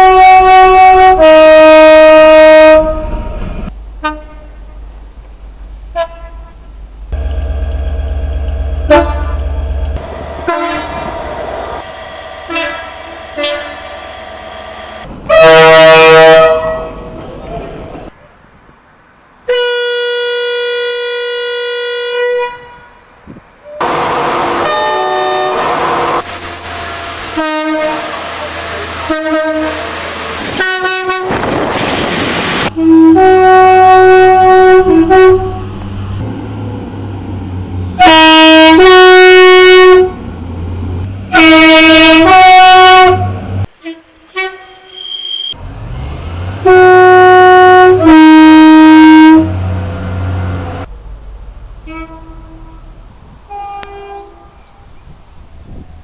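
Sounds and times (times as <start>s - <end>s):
two-tone train horn blasts: 0.0s - 4.8s, 5.9s - 11.2s, 11.9s - 14.1s, 15.3s - 17.2s, 19.4s - 28.2s, 29.0s - 31.6s, 32.7s - 35.8s, 38.0s - 40.2s, 41.3s - 45.1s, 46.6s - 50.9s, 51.8s - 54.8s
diesel engine rumble: 0.0s - 18.1s, 31.8s - 43.7s, 45.6s - 56.0s
rush of passing trains: 0.0s - 56.0s.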